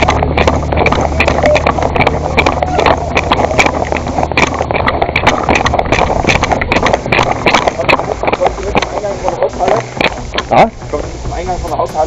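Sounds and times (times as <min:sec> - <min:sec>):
faint indistinct voices: 0:00.0 - 0:04.6
car engine running: 0:00.0 - 0:12.0.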